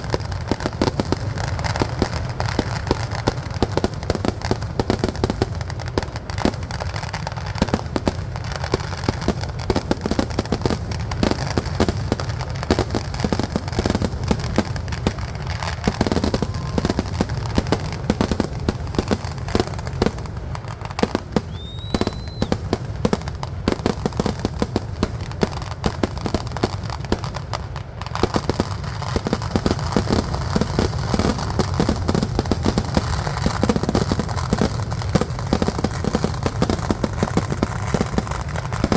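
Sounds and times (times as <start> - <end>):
firecracker bangs: 0.0 - 38.9
rising firework whistle: 15.0 - 19.1, 20.9 - 22.9.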